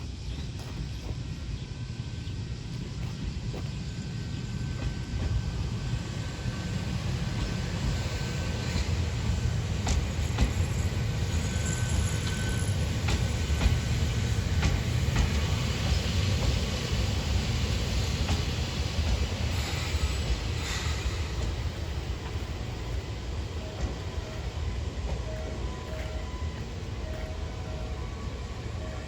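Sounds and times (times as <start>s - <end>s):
electric train rumbling: 0.0s - 29.0s
wheels clicking over rail joints: 12.1s - 17.6s.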